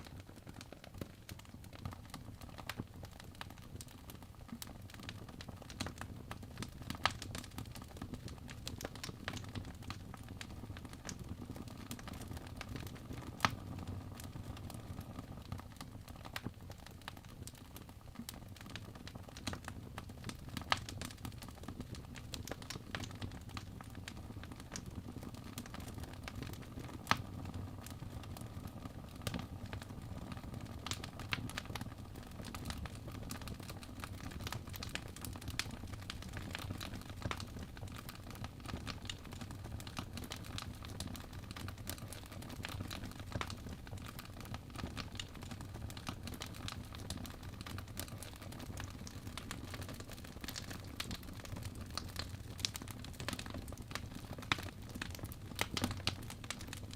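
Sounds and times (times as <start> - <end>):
wood fire crackling: 0.0 - 56.9.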